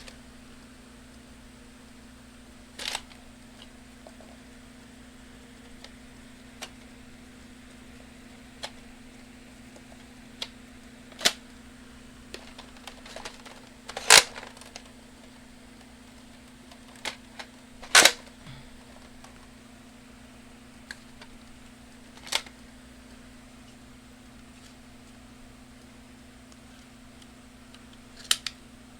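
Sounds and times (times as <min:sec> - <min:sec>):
steady low hum: 0:00.0 - 0:28.9
toy blaster plastic clicks: 0:17.8 - 0:18.2.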